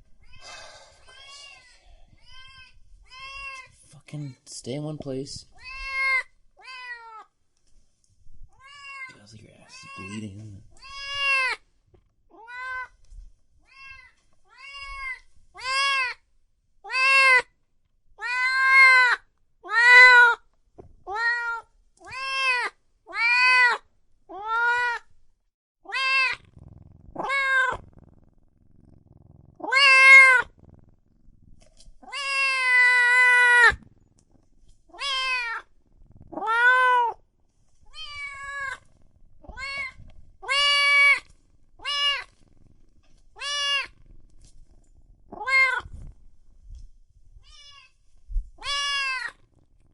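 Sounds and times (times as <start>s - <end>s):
cat meowing: 0.1s - 4.4s, 5.5s - 7.3s, 8.5s - 11.6s, 12.3s - 13.0s, 13.6s - 16.2s, 16.8s - 17.6s, 18.2s - 20.4s, 21.0s - 25.0s, 25.8s - 26.5s, 27.2s - 27.8s, 29.6s - 30.6s, 32.0s - 33.8s, 34.9s - 35.7s, 36.3s - 37.2s, 37.9s - 38.8s, 39.4s - 42.3s, 43.4s - 44.0s, 45.3s - 45.9s, 47.4s - 47.9s, 48.6s - 49.4s.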